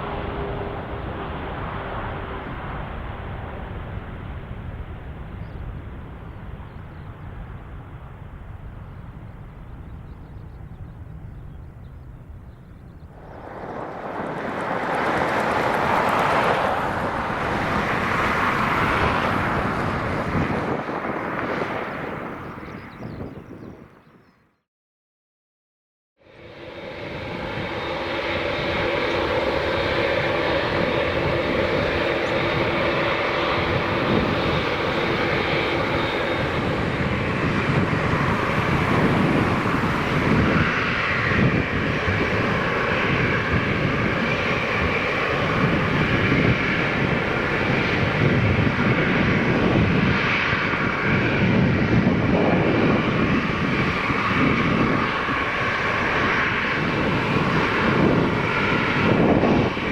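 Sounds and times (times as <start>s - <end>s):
jet engine roar: 0.0s - 24.1s, 26.2s - 59.9s
steady whining tones: 13.1s - 18.3s, 26.4s - 48.6s.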